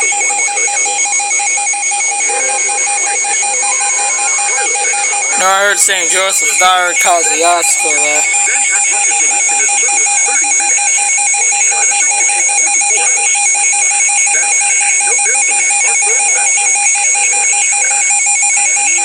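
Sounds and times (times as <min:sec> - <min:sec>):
piercing electronic alarm tone: 0:00.0 - 0:19.0
faint voice: 0:02.3 - 0:13.4.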